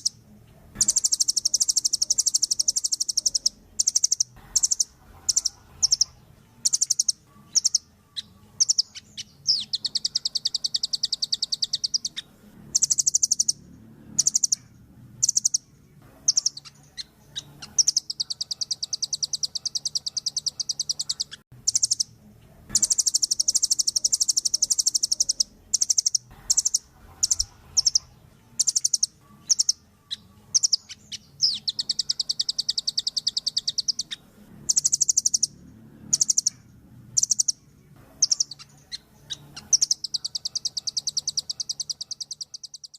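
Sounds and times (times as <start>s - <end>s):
bird calling with sharp chips: 0.0s - 0.2s, 0.8s - 13.6s, 14.2s - 22.1s, 22.7s - 35.5s, 38.2s - 42.9s
rapid bird trills: 0.0s - 42.9s.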